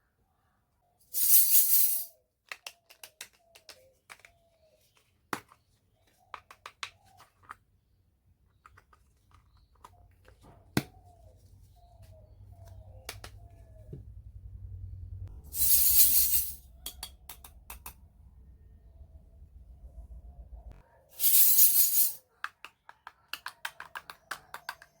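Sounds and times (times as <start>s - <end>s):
toy kitchen pieces clicking: 1.4s - 4.4s, 15.6s - 18.0s, 21.2s - 25.0s
low hum: 13.4s - 20.8s.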